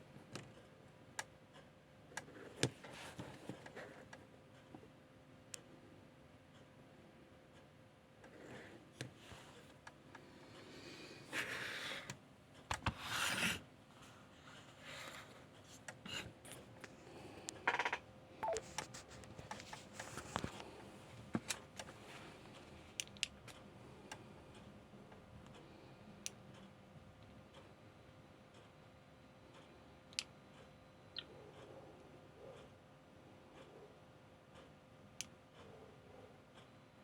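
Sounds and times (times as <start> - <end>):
keypad buttons clicking: 17.7 - 18.8
brief beep: 18.4 - 18.6.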